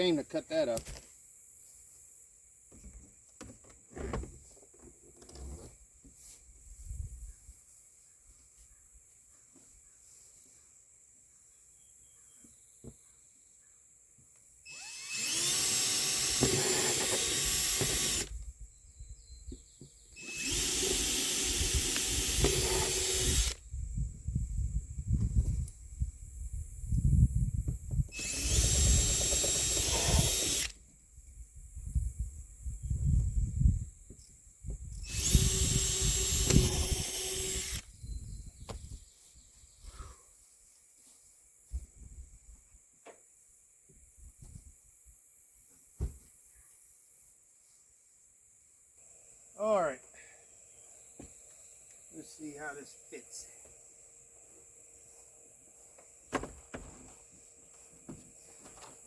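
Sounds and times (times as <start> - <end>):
electric drill boring plastic: 14.7 - 18.4, 20.2 - 23.6, 28.1 - 30.8, 35.0 - 37.9
power tool motor whining: 14.7 - 18.5, 20.2 - 23.6, 28.1 - 30.8, 34.9 - 38.0
handling knocks and bumps: 56.3 - 57.2.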